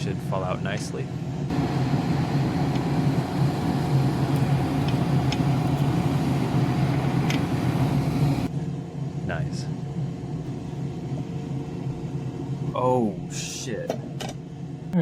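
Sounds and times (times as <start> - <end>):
hot air blower hissing: 1.5 - 8.5.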